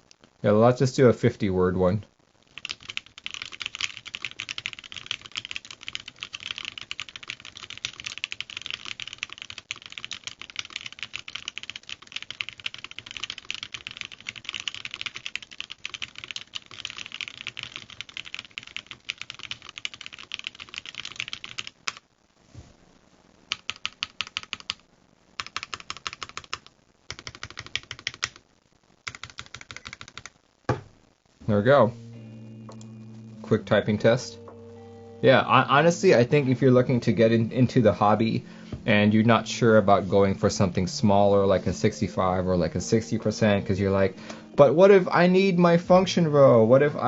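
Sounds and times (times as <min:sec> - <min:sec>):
fast typing on mechanical keyboard: 0:02.6 - 0:22.0, 0:23.5 - 0:24.8, 0:25.4 - 0:28.4, 0:29.0 - 0:30.3.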